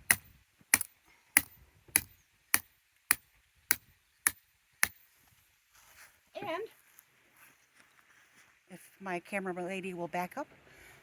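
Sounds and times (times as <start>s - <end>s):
hammer driving a stake: 0.0s - 5.0s.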